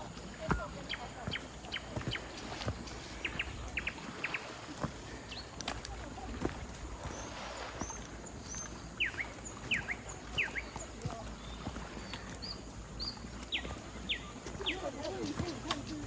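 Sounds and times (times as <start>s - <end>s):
faint high bird chirps: 7.0s - 16.0s.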